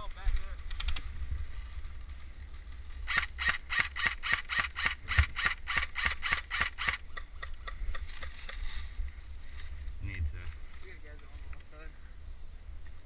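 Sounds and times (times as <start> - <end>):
airsoft rifle shots: 3.1 - 7.0.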